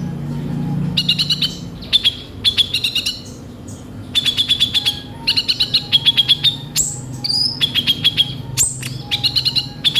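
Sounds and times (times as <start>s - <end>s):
sunbird chirping: 0.9s - 9.9s
high whistled bird notes: 4.1s - 9.9s.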